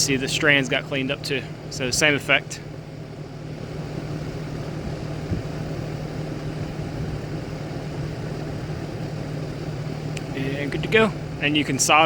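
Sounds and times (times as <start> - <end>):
constant rushing noise: 0.0 - 12.0
low mechanical hum: 0.0 - 12.0.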